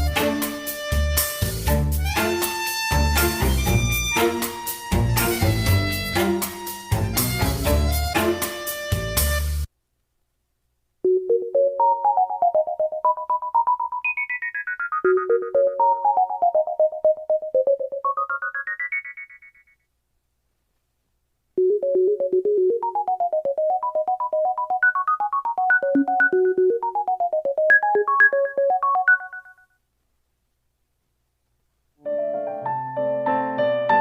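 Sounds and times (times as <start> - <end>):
fast keyboard-like ringtone: 2.2 - 8.6, 11.1 - 19.8, 21.6 - 29.8
synthesized electric piano ringtone: 11.1 - 19.8, 21.6 - 29.7.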